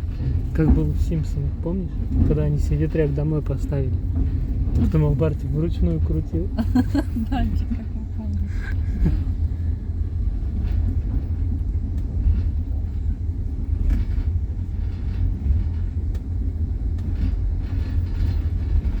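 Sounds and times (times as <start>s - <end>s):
train rumbling at speed: 0.0s - 19.0s.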